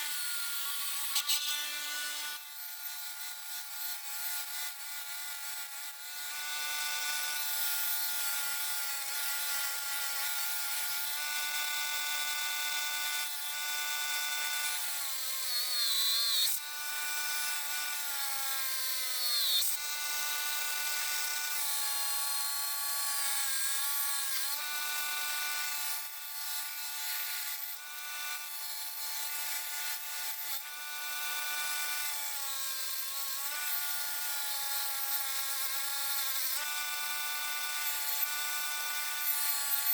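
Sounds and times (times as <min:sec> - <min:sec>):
power tool motor whining: 0:10.3 - 0:39.9.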